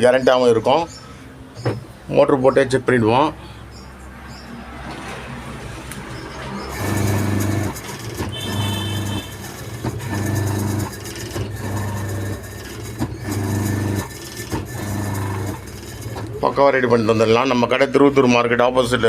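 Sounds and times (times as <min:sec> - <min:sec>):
washing machine motor humming: 0:06.7 - 0:16.6.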